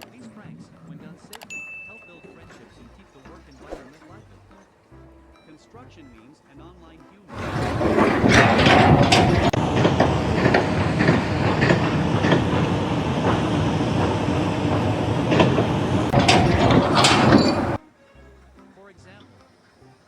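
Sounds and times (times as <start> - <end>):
knocks and clanks: 7.3 - 17.8
mechanical rattling and clattering: 7.3 - 17.8.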